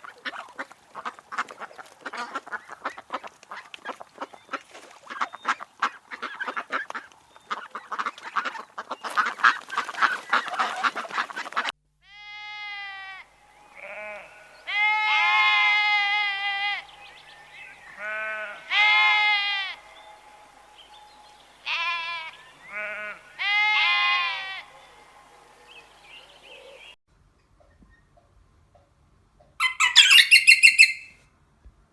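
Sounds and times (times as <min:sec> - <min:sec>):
farm animal bleating: 0:12.0 - 0:16.9, 0:17.9 - 0:19.9, 0:21.6 - 0:24.7.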